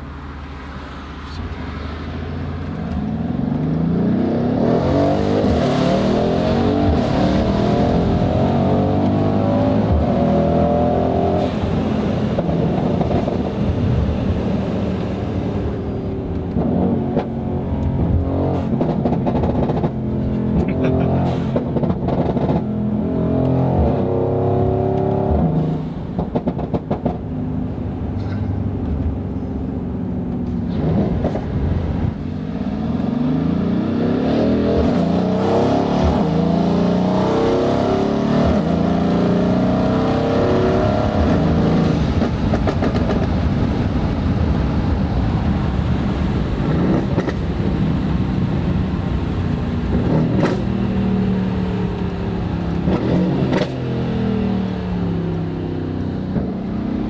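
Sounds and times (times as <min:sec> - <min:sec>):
car engine revving: 0:00.0 - 0:57.0
exhaust crackles popping: 0:16.2 - 0:22.7, 0:25.3 - 0:27.5, 0:41.1 - 0:53.8.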